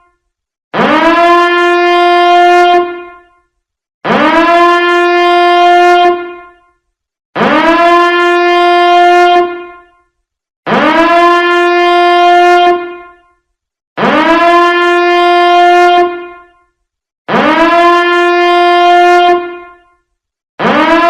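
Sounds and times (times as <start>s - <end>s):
alarm horn rising in pitch: 0.8s - 3.4s, 4.0s - 6.7s, 7.4s - 9.8s, 10.7s - 13.3s, 14.0s - 16.6s, 17.3s - 19.8s, 20.6s - 21.0s.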